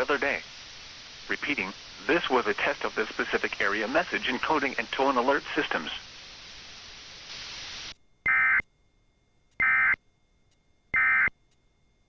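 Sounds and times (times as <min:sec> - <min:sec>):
radio hiss: 0:00.0 - 0:08.6
data bursts: 0:08.3 - 0:08.6, 0:09.6 - 0:10.0, 0:11.0 - 0:11.3.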